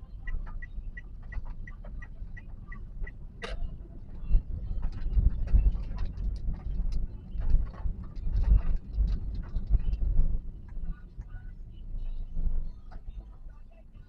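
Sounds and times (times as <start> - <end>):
car road rumble inside cabin: 0.0 - 14.0
light clicks and taps: 0.2 - 11.5.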